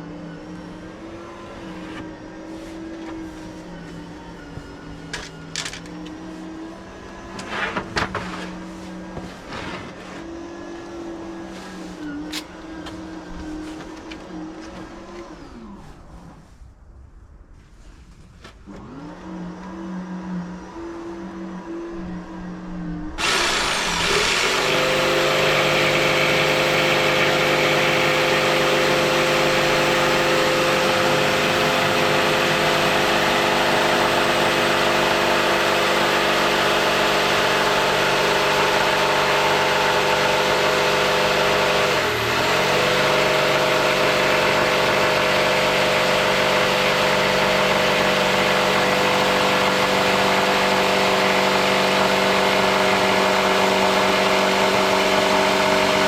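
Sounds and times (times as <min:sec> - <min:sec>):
motor running: 0:22.8 - 0:56.0.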